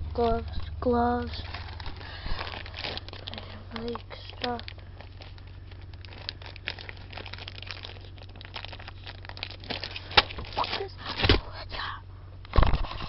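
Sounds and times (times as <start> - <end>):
belongings rustling and crinkling: 0.0 - 11.8
steady low hum: 0.0 - 13.0.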